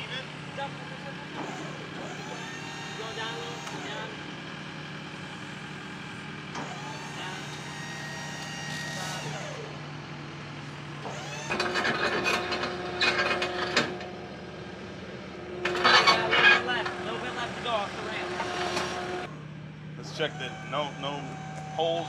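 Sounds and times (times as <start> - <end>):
skid steer engine running: 0.0 - 22.0.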